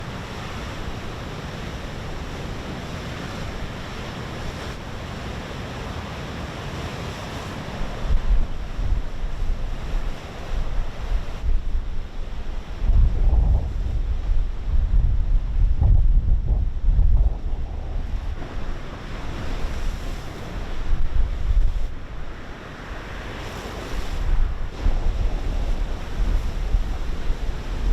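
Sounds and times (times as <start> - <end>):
rough surf breaking on shore: 0.0 - 27.9
wind buffeting microphone: 7.8 - 22.5, 23.8 - 27.9.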